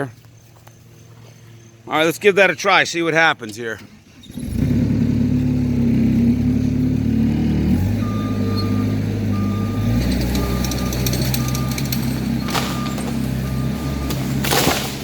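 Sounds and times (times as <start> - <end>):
skid steer engine running hard: 4.2 - 15.0
reversing alarm beeping: 7.7 - 14.4
sharp crackling: 9.8 - 15.0.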